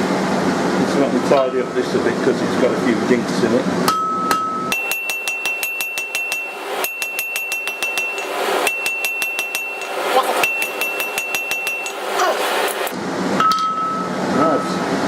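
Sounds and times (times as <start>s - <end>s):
hammer blows on hot steel: 3.9s - 13.6s
anvil ringing: 3.9s - 14.2s.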